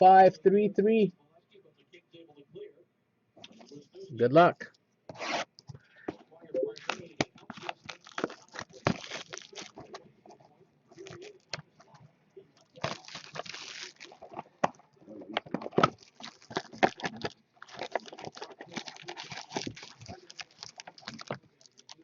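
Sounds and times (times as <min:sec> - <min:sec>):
plastic wrap crinkling: 0:07.0 - 0:11.9, 0:12.6 - 0:22.0.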